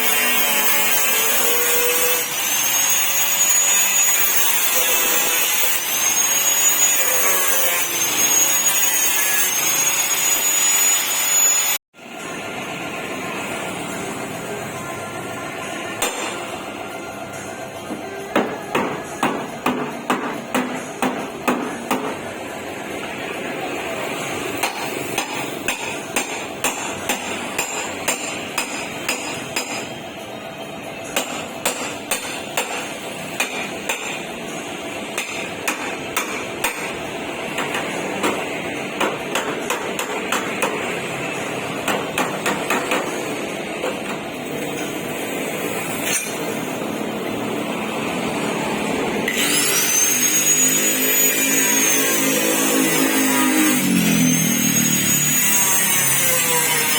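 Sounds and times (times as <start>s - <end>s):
workshop background noise: 0.0s - 56.9s
hammer striking sheet metal: 16.0s - 16.6s, 17.9s - 22.4s, 24.6s - 30.0s, 31.1s - 34.3s, 35.1s - 41.1s, 41.7s - 45.0s, 46.0s - 46.8s.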